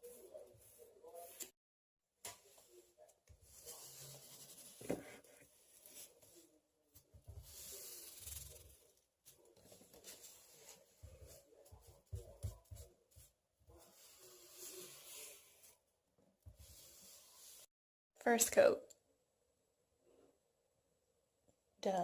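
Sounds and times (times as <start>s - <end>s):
foam brush rubbing on wood: 9.9s - 15.8s.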